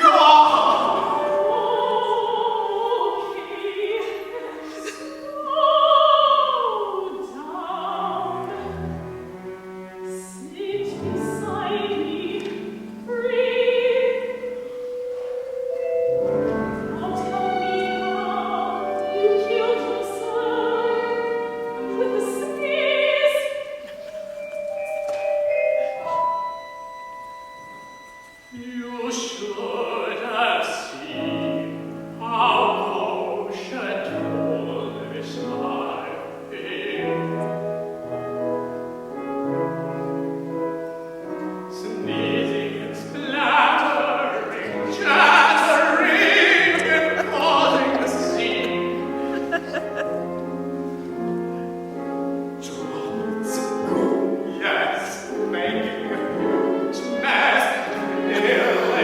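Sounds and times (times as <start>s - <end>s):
operatic singing: 0.0s - 15.1s, 15.8s - 24.2s, 28.5s - 37.8s, 41.7s - 51.6s, 52.5s - 59.0s
instrumental accompaniment: 7.8s - 28.8s, 44.4s - 54.6s, 55.9s - 59.0s.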